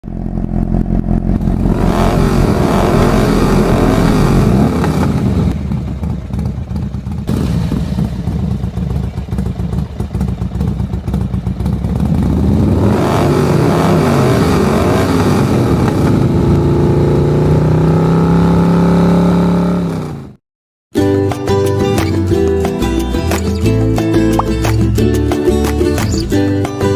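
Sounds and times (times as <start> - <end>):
motorcycle engine revving: 0.0 - 20.4.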